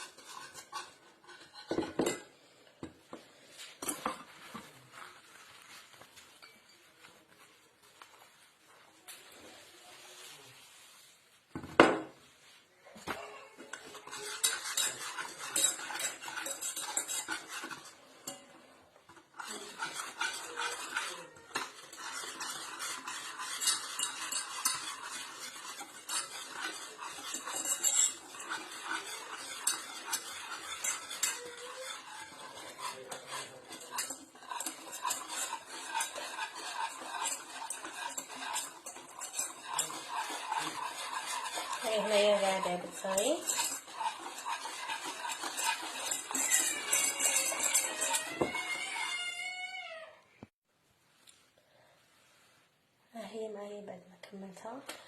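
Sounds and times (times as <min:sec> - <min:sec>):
spoon stirring and scraping in pot: 0:00.0 - 0:49.9.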